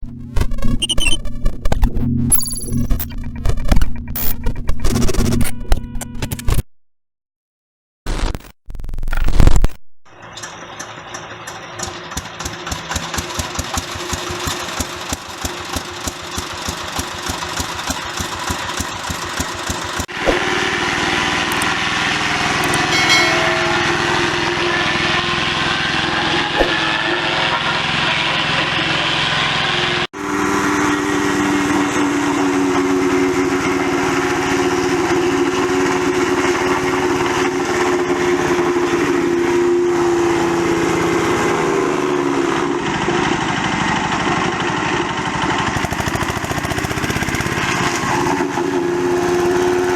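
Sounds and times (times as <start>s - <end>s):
wood chipper engine running: 10.2s - 49.9s.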